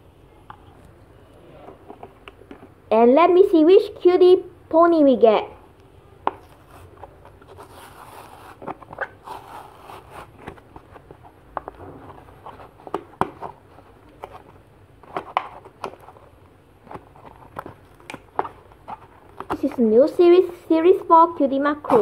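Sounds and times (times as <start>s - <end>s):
plastic packaging crinkling: 6.4s - 14.6s.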